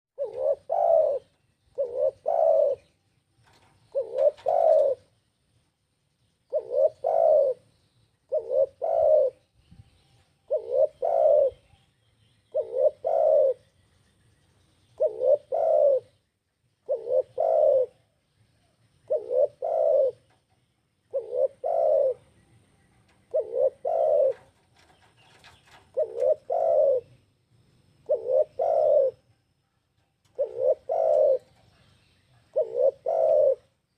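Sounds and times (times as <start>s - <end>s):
dove cooing: 0.2s - 5.2s, 6.5s - 7.7s, 8.3s - 9.5s, 10.3s - 11.8s, 12.4s - 13.7s, 15.0s - 16.2s, 16.8s - 27.2s, 28.0s - 29.4s, 30.2s - 33.8s.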